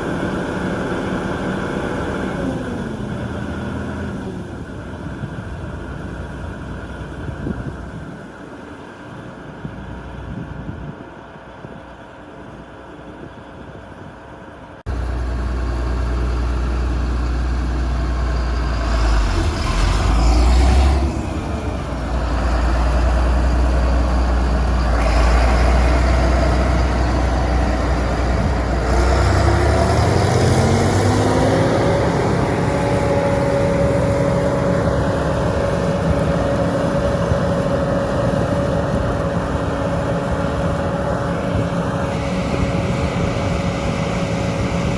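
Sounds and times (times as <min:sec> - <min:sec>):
diesel farm machinery running: 0:00.0 - 0:44.9
rising whine: 0:14.9 - 0:44.9.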